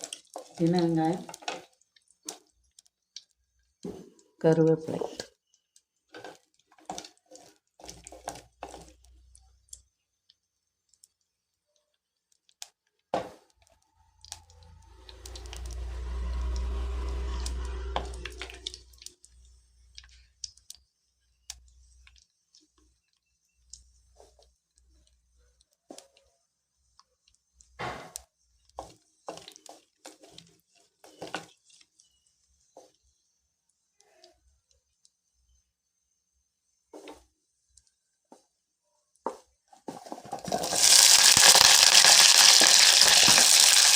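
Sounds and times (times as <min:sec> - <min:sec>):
onions frying in hot oil: 0:00.0 - 0:03.4, 0:14.9 - 0:20.8, 0:39.9 - 0:43.9.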